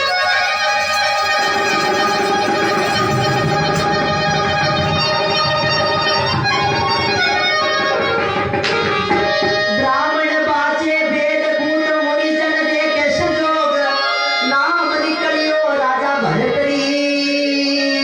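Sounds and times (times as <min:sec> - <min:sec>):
dholak drum rhythm: 0:00.0 - 0:11.2.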